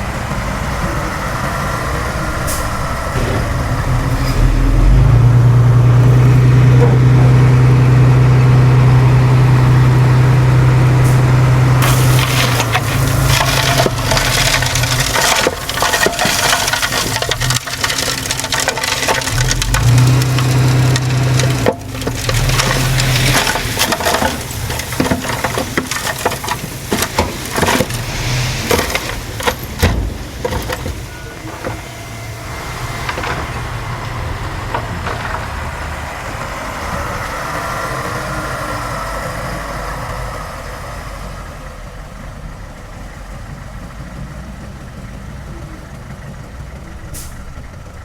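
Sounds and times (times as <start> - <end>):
diesel engine running: 0.0 - 48.0
material crunching and cracking: 11.8 - 31.8.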